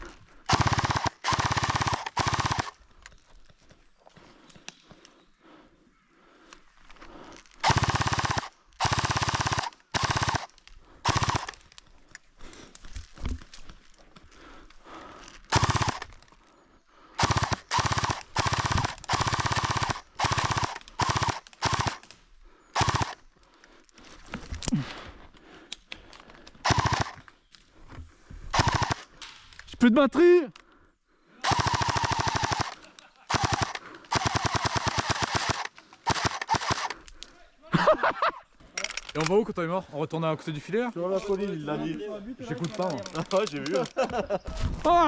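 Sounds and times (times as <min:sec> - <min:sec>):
airsoft gun firing bursts: 0:00.5 - 0:02.8, 0:07.6 - 0:11.7, 0:15.5 - 0:16.2, 0:17.2 - 0:22.1, 0:22.7 - 0:23.2, 0:26.6 - 0:27.2, 0:28.5 - 0:29.1, 0:31.4 - 0:37.0.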